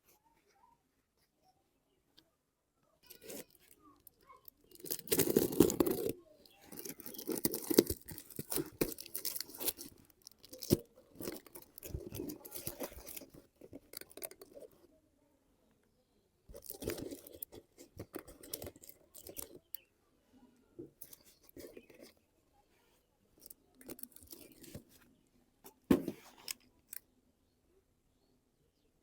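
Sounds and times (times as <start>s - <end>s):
packaging tearing and crinkling: 4.7s - 6.2s, 6.8s - 14.6s.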